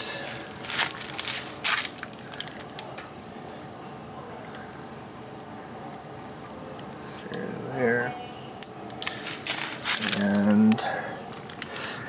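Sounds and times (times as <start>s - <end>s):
low steady hiss: 0.0s - 12.0s
short rustles: 0.1s - 2.7s, 9.1s - 10.6s.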